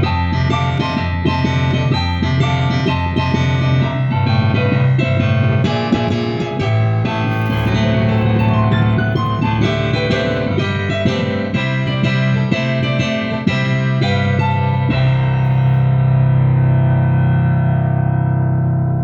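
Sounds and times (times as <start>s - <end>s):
keyboard instrument music: 7.2s - 12.5s.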